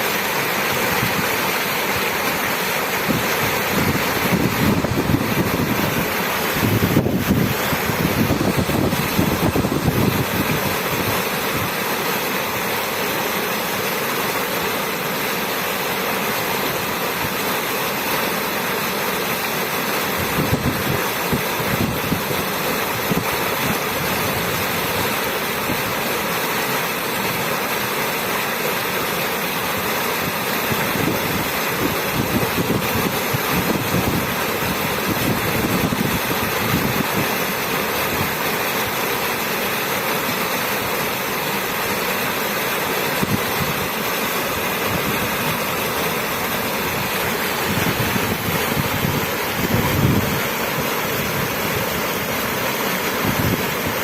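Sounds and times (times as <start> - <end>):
running water flowing: 0.0 - 54.0.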